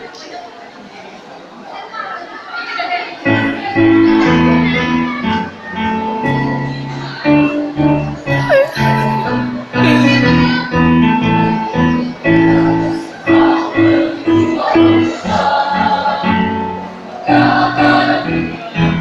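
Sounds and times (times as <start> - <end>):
choir singing in harmony: 12.2 - 19.0.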